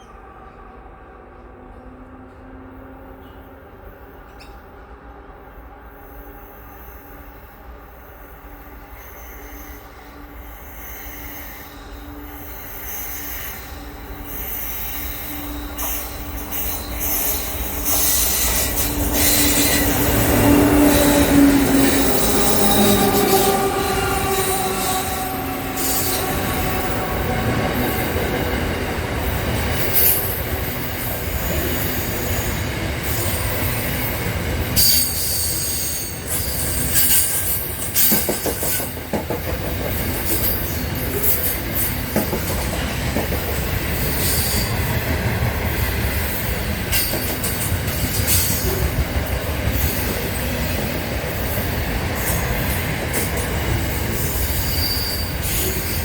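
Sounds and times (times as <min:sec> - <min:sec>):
train rumbling past: 0:00.0 - 0:56.0
wheels squealing: 0:15.9 - 0:28.1.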